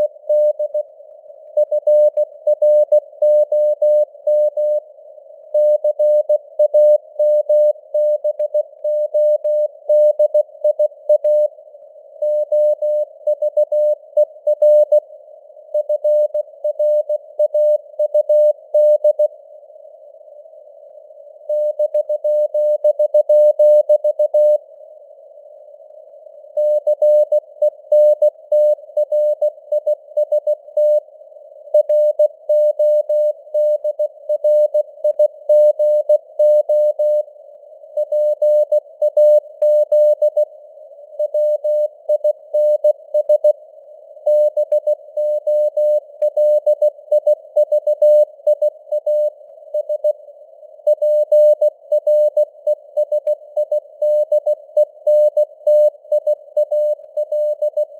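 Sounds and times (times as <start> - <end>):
morse code tone: 50.9 - 57.9.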